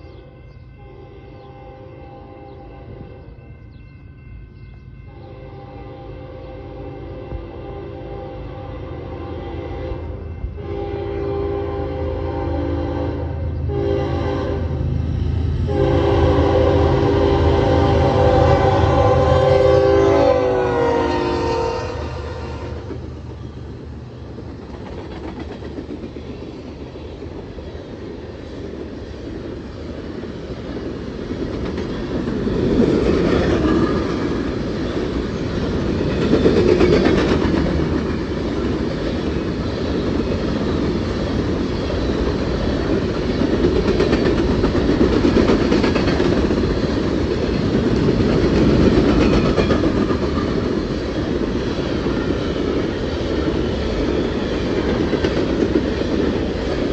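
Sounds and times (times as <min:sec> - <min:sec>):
train cars rolling past: 0:09.0 - 0:56.9
wheels clacking over rails: 0:22.8 - 0:56.9.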